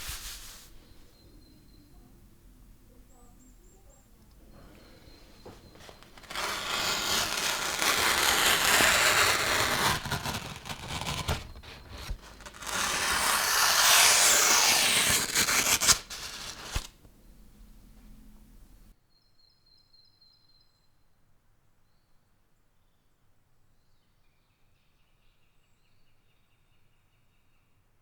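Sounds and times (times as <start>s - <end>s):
knife blade scraping: 5.7s - 16.9s.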